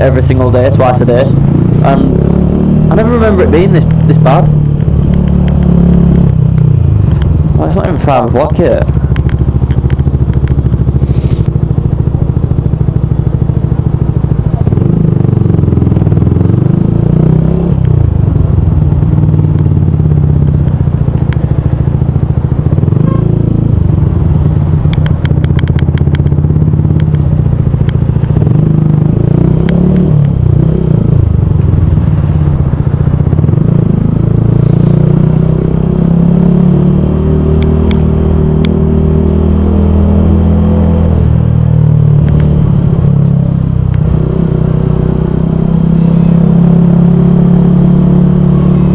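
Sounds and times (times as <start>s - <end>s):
motorcycle engine revving: 0.0s - 48.9s
sharp clicks: 24.7s - 26.3s.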